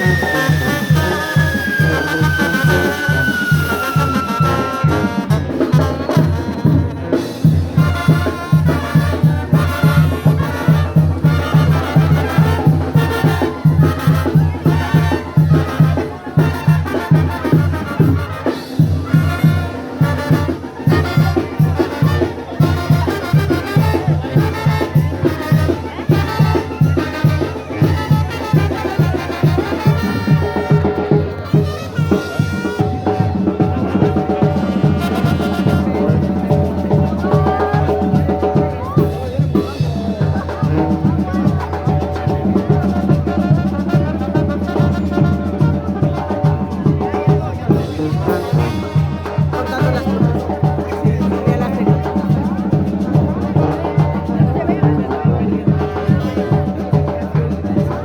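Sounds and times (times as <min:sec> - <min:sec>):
brass band playing: 0:00.0 - 0:53.8, 0:55.7 - 0:57.3
bass drum beat: 0:16.4 - 0:41.4.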